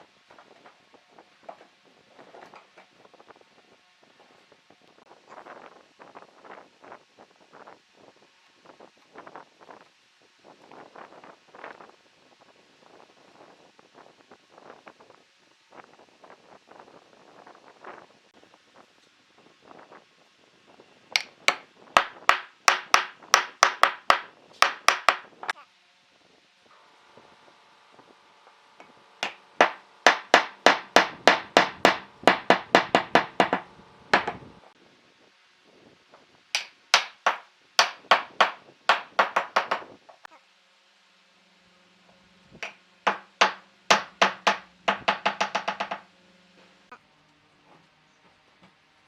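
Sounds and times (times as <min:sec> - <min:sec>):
hammer blows on wood: 0:21.2 - 0:25.5, 0:28.8 - 0:34.6, 0:36.6 - 0:40.3, 0:42.6 - 0:46.0.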